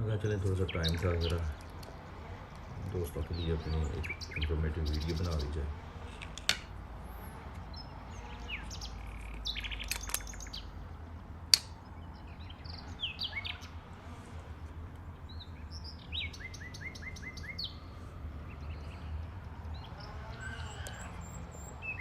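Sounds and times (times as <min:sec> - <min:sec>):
small birds chirping: 0:00.0 - 0:22.0
sharp click: 0:11.5 - 0:11.8.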